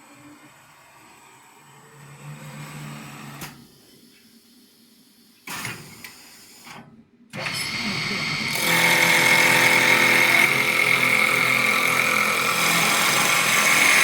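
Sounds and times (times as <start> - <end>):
lathe motor hum: 7.6 - 14.0.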